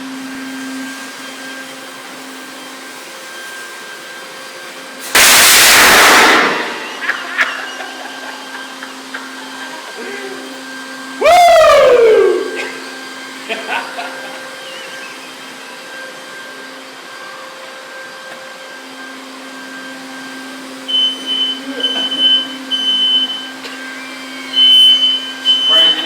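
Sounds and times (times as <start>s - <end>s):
vacuum cleaner humming: 0.0s - 26.0s
smoke alarm beeping: 5.2s - 9.6s, 20.2s - 26.0s.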